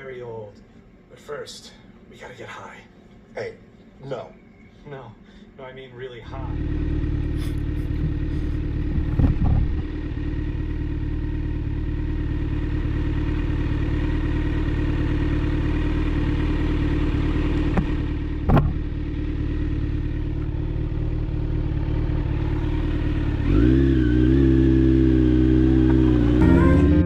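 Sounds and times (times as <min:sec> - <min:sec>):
vehicle engine running: 0:06.3 - 0:27.0
wavering tone: 0:25.8 - 0:27.0.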